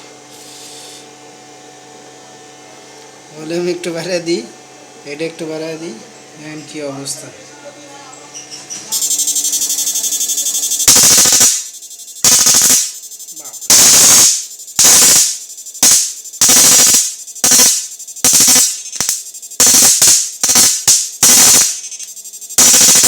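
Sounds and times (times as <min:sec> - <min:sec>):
electric machine buzzing: 0:08.9 - 0:23.0
harsh electric bursts: 0:08.9 - 0:23.0.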